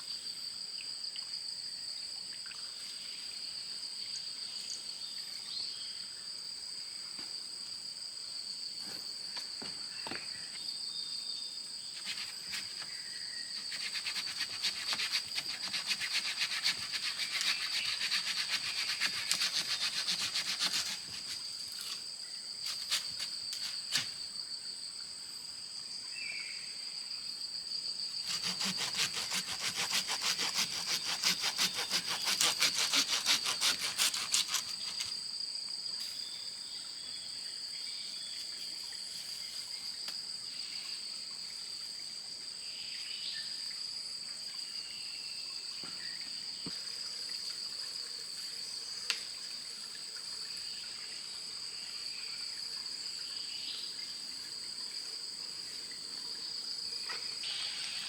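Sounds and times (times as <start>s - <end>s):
insects buzzing: 2.8s - 58.0s
rapid rasping: 13.7s - 21.3s, 28.3s - 35.1s.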